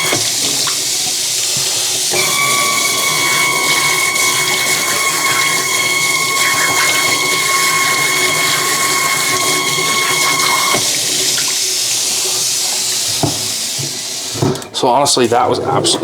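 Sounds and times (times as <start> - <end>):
water spraying from sink sprayer: 0.0 - 16.0
steady whistling tone: 2.1 - 11.2.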